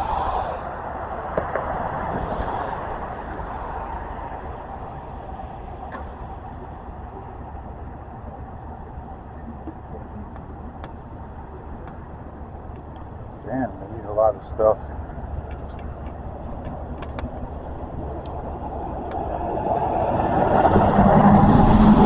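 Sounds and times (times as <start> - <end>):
traffic noise: 0.0 - 22.0.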